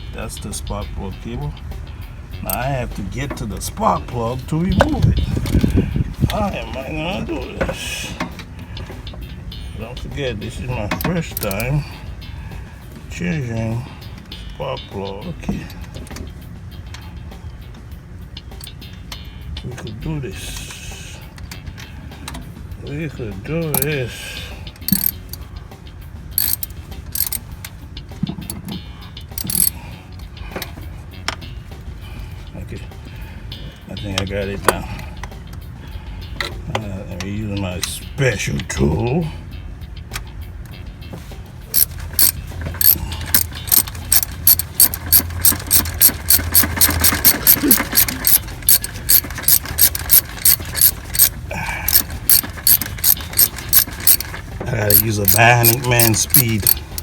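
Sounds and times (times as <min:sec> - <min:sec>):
metallic tool clicks and rattles: 0:02.4 - 0:02.7, 0:10.9 - 0:11.8, 0:23.7 - 0:24.0, 0:24.8 - 0:25.4, 0:26.4 - 0:27.4, 0:29.3 - 0:29.8, 0:41.7 - 0:57.0.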